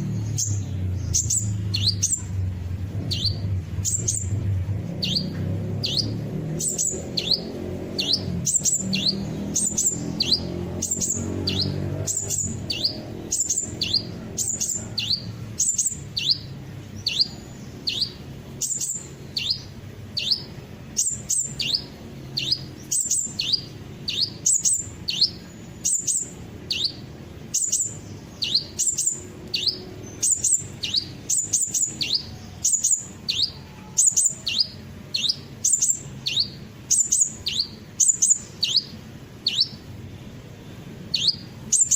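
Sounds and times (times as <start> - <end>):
high descending bird calls: 0.0 - 39.8, 41.1 - 41.9.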